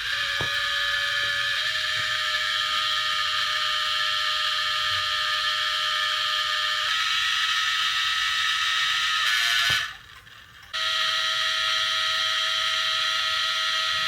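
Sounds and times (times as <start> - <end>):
high electrical buzz: 0.0 - 14.0.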